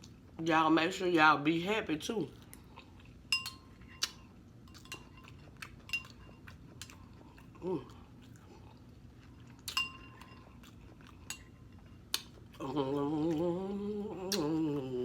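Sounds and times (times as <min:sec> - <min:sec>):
spoon clinking against bowl: 0:03.3 - 0:03.7, 0:04.7 - 0:06.4, 0:09.7 - 0:10.4
person humming: 0:12.6 - 0:15.0.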